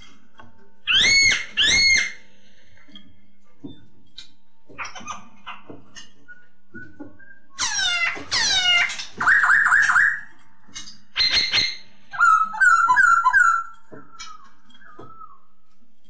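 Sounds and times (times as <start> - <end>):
bird singing whistled phrases: 9.2 - 10.3, 12.2 - 15.5.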